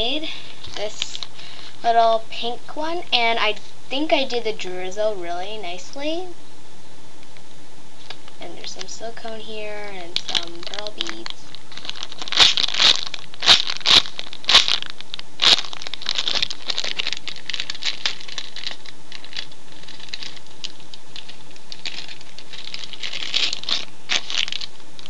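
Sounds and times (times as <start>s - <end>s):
wrapping crinkling and crackling: 0.2s - 1.9s, 8.8s - 25.0s.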